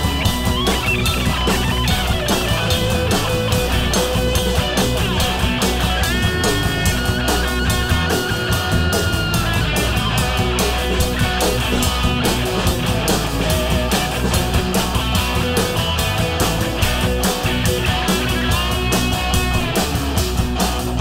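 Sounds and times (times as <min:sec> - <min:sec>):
lead guitar long notes: 0:00.0 - 0:21.0
live rock band playing: 0:00.0 - 0:21.0.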